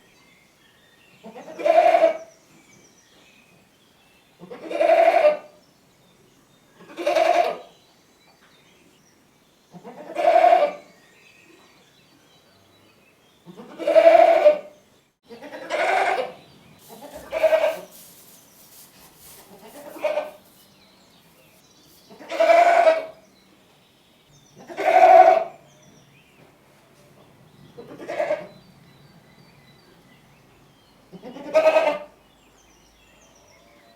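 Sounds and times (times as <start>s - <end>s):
goat bleating: 13.6s - 14.7s, 15.3s - 17.9s, 19.5s - 20.4s, 22.2s - 23.1s, 24.7s - 25.5s.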